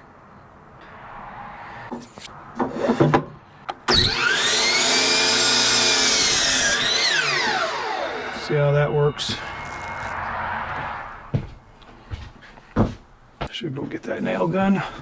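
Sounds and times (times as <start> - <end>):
power saw cutting wood: 3.9 - 11.5
wood being scraped: 4.1 - 8.5.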